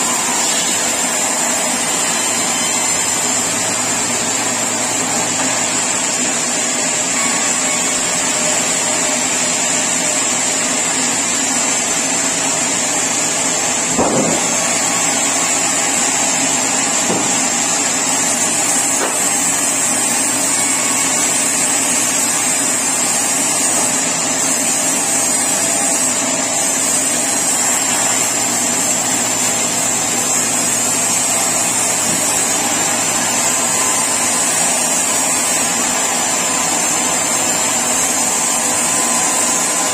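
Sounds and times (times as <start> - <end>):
sawmill saw cutting timber: 0.0 - 39.9
knock: 17.1 - 17.4.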